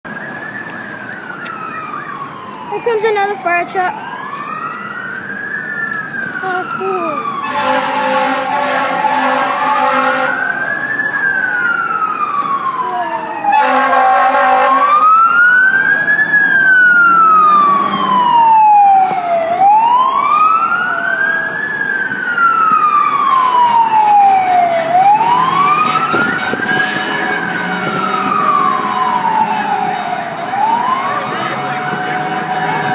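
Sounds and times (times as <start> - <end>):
fire truck siren wailing: 0.1 - 32.9
air horn blasts: 7.4 - 10.5, 13.5 - 15.0, 25.8 - 28.1, 29.9 - 32.9.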